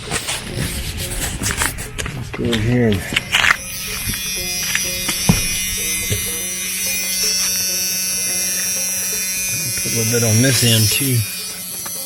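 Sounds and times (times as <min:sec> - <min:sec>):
electric buzz with hiss: 0:03.2 - 0:12.0.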